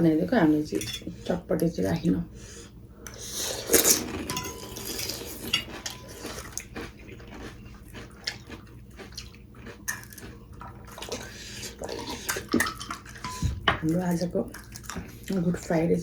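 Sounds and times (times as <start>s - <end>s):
utensils clinking on plates: 0.7s - 1.1s, 3.8s - 6.7s, 10.9s - 13.9s.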